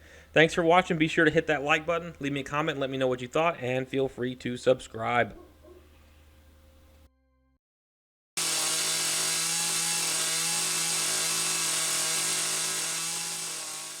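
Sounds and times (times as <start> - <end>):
chainsaw engine at high revs: 8.4 - 14.0.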